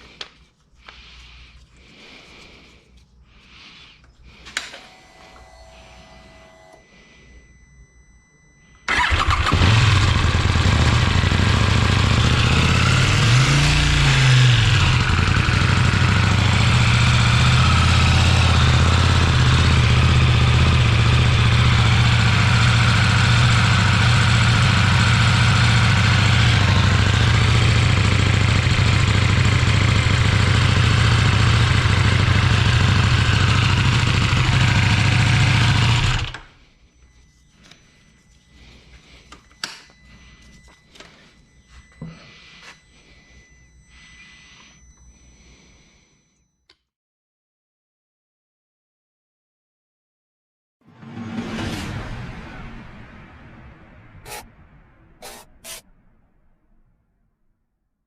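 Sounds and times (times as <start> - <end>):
motorcycle engine idling: 8.9 - 36.4
motorcycle engine revving: 8.9 - 36.5.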